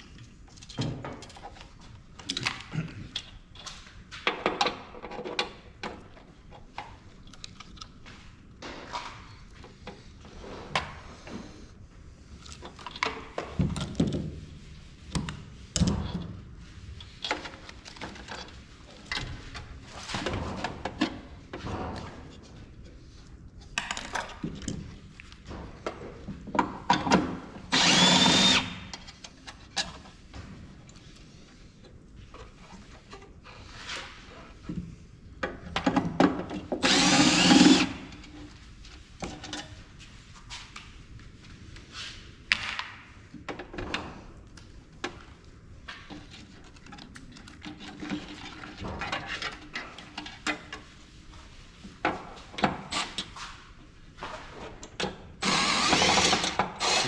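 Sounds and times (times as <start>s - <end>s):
electric drill bursts: 27.7s - 28.8s, 36.8s - 38.0s, 55.4s - 57.0s.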